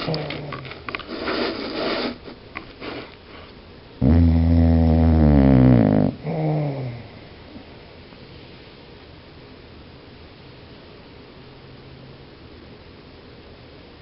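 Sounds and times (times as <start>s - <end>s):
dog snoring: 4.0s - 7.2s.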